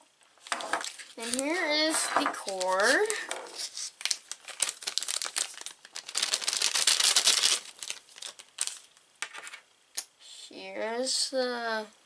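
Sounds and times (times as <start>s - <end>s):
packaging crinkling and rustling: 0.4s - 9.6s.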